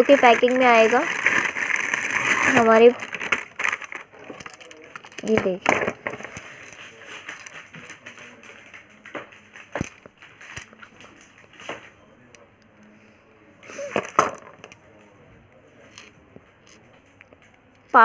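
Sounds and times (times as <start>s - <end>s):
packaging rustling: 0.0s - 5.3s
metallic clinks and clicks: 4.3s - 8.8s, 9.6s - 10.8s, 13.9s - 14.8s.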